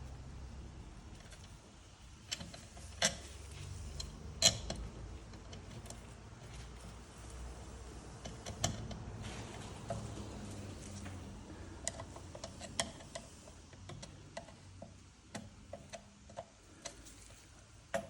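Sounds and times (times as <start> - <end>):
clicks and taps of hard parts: 9.8 - 17.2.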